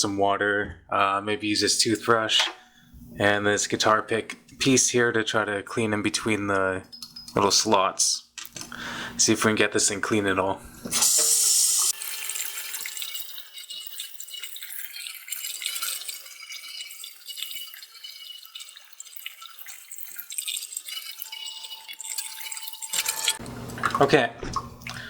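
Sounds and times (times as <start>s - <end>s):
tap water gushing: 10.6s - 25.0s
water dripping and splashing: 11.9s - 25.0s.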